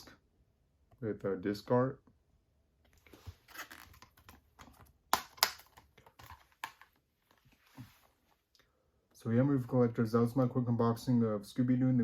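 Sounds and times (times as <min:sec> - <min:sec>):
plastic case rustling: 0:03.0 - 0:08.1
plastic case clicks: 0:04.0 - 0:06.9.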